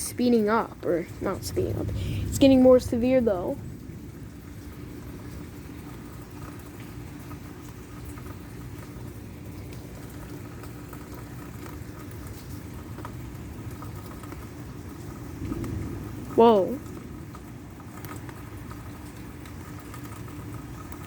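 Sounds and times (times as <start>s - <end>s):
faint steady hum: 0.0s - 21.0s
light rain pattering: 0.0s - 21.0s.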